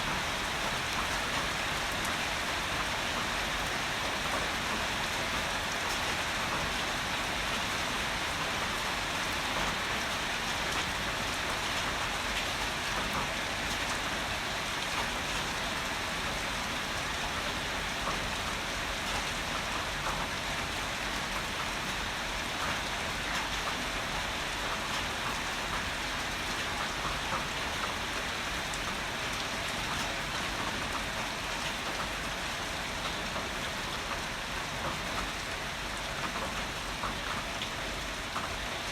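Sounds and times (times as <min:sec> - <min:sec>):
heavy rain: 0:00.0 - 0:38.9
raindrops pattering: 0:00.0 - 0:38.9.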